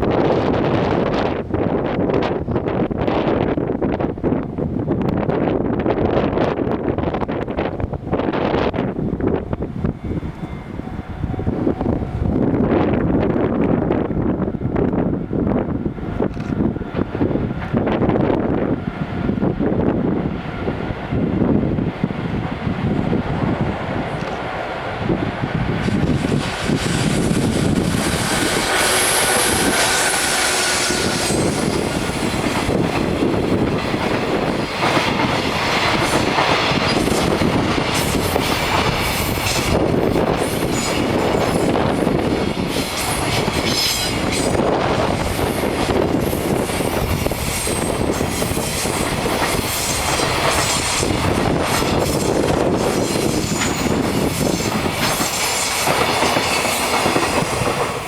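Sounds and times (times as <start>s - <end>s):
freight train rumbling past: 0.0s - 58.0s
wheels clacking over rail joints: 25.8s - 41.7s, 42.3s - 58.0s.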